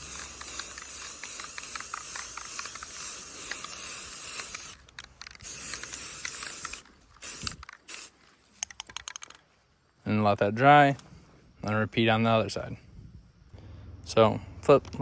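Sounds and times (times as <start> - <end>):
aerosol spray can hissing: 0.0 - 8.2.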